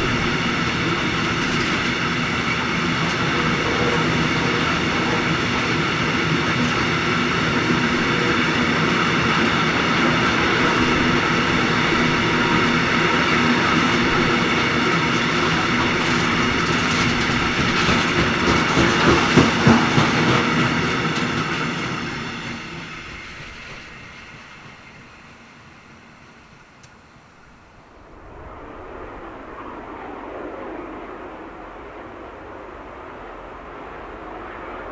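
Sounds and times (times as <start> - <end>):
wheels clattering over rail joints: 0.0 - 27.7
diesel locomotive engine drone: 0.0 - 34.9.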